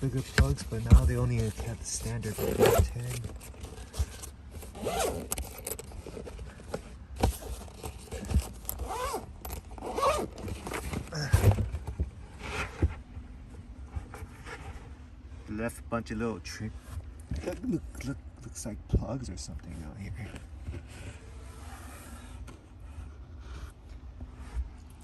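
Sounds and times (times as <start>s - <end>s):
zipper being pulled: 0.0s - 6.4s, 7.2s - 11.5s
small items being handled: 0.0s - 12.0s.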